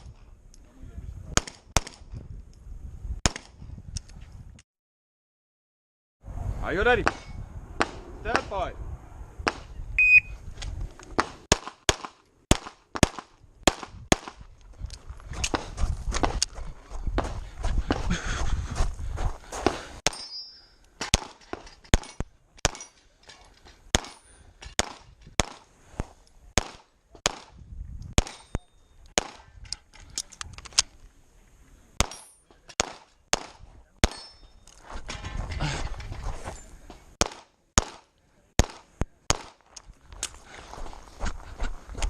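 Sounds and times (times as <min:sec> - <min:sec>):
pistol shots: 0:11.2 - 0:14.4, 0:26.6 - 0:27.5, 0:28.2 - 0:28.6, 0:29.2 - 0:29.5, 0:32.0 - 0:34.3, 0:37.2 - 0:39.6
metallic ring: 0:20.1 - 0:20.8, 0:34.1 - 0:35.5.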